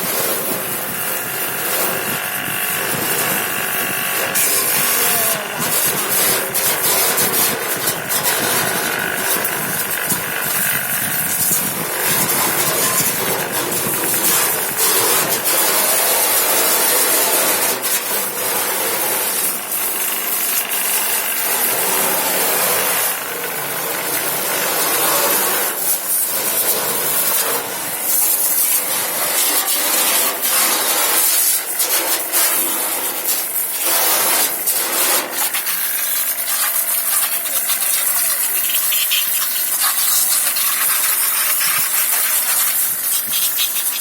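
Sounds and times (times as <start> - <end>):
scrubbing and scraping metal parts: 0.0 - 44.0.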